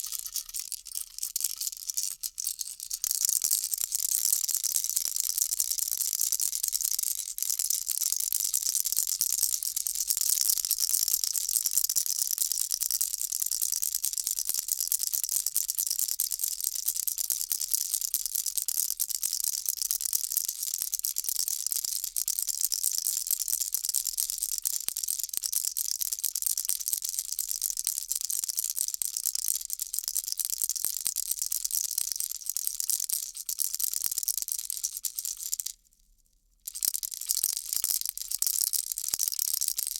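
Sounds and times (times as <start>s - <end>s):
baby rattle shaking: 0.0s - 7.4s, 36.7s - 39.9s.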